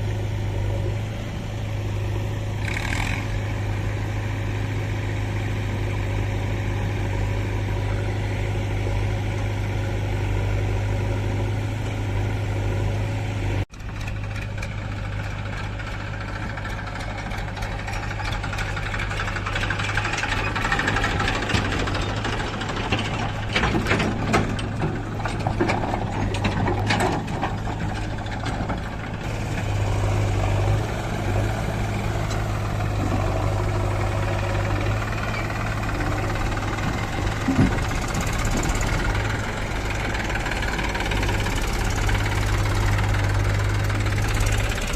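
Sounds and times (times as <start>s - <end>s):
engine idling drone: 0.0s - 44.9s
clattering and rattling knocks: 13.8s - 29.6s, 34.9s - 44.8s.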